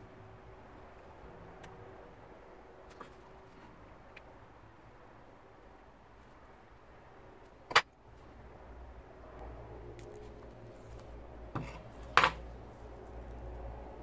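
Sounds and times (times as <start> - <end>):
low hum: 8.2 - 14.0.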